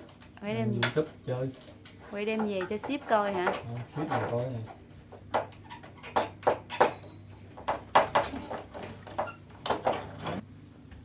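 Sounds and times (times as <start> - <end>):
short knocks and clatter: 2.4 - 10.4.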